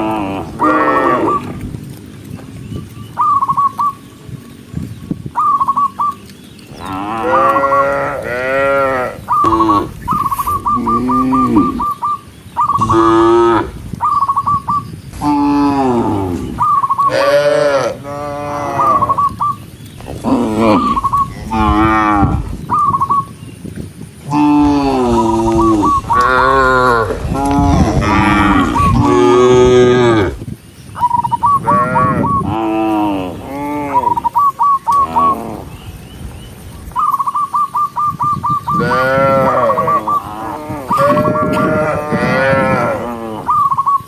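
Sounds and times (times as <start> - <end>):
cows mooing: 0.0 - 1.6, 6.7 - 12.1, 12.7 - 13.8, 15.2 - 19.3, 20.0 - 23.2, 24.2 - 30.4, 31.6 - 35.7, 38.7 - 43.6.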